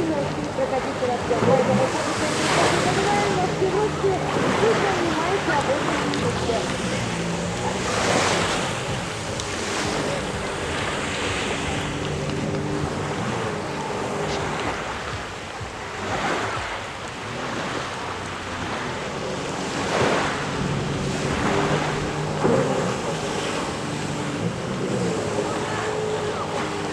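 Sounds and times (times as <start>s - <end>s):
jet ski engine running: 0.0s - 26.9s
rushing water spray: 0.0s - 26.9s.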